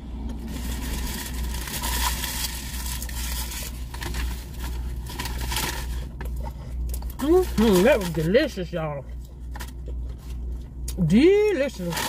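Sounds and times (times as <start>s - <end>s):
low hum inside car: 0.0s - 12.0s
chewing and mouth sounds: 6.0s - 7.8s, 9.0s - 11.0s.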